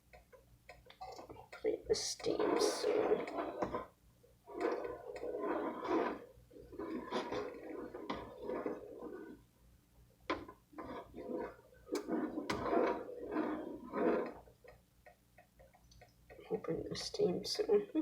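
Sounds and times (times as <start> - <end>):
background voices: 1.0 - 3.8.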